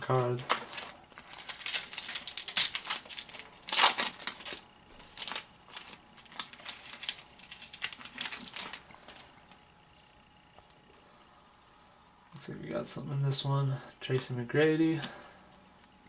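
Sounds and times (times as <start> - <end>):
foil wrapper crinkling and tearing: 0.0 - 9.3
cards rustling: 0.1 - 10.1.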